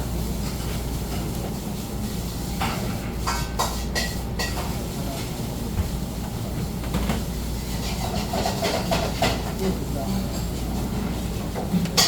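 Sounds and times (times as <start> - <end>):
restaurant room hum: 0.0 - 12.0
dishes clinking and clattering: 2.6 - 5.3, 6.9 - 12.0.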